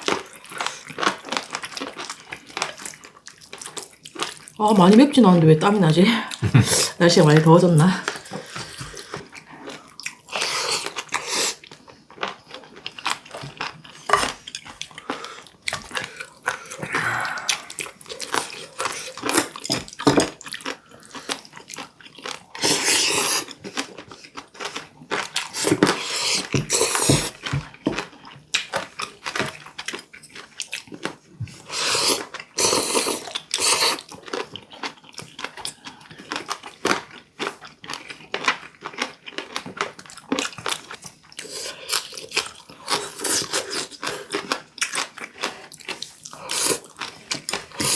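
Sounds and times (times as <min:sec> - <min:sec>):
chewing and crunching: 0:00.0 - 0:04.9, 0:07.3 - 0:47.9
wet mouth noises: 0:06.3 - 0:07.0, 0:16.5 - 0:18.7.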